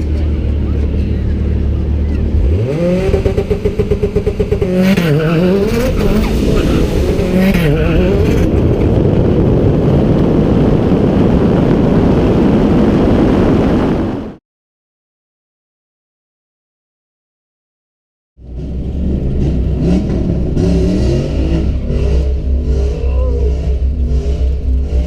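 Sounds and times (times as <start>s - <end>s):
turbocharged car engine accelerating: 0.0s - 14.1s, 18.4s - 25.0s.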